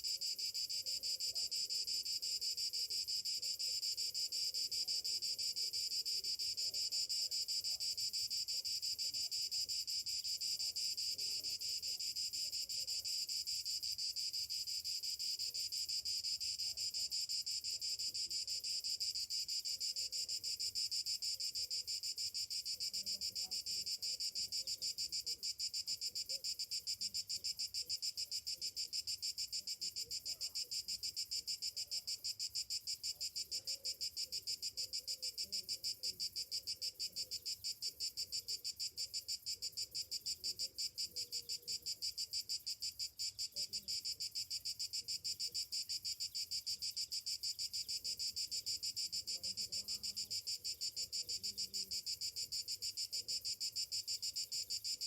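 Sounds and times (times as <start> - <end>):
cicadas chorus: 0.0 - 55.0.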